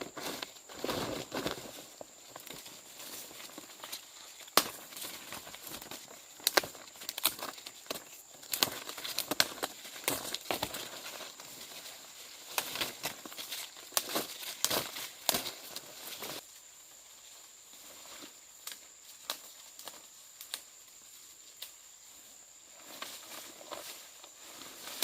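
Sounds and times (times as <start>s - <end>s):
crackles and snaps: 2.3s - 16.4s, 18.6s - 20.9s, 21.5s - 21.8s.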